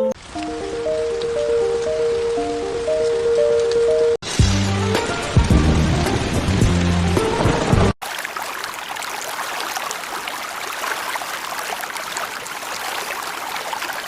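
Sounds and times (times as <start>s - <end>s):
stream babbling: 8.0s - 14.0s.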